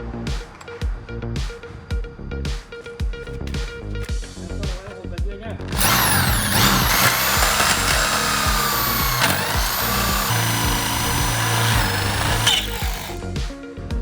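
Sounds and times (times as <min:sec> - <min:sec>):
background music: 0:00.0 - 0:14.0
power tool whining: 0:05.6 - 0:13.3.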